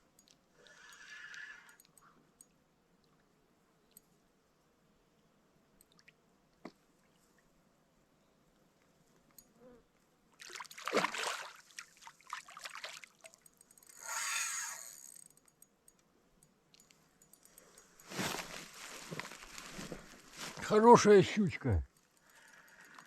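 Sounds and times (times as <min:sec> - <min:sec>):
water splashing and sloshing: 0:10.3 - 0:13.5
light clicks: 0:13.2 - 0:20.6.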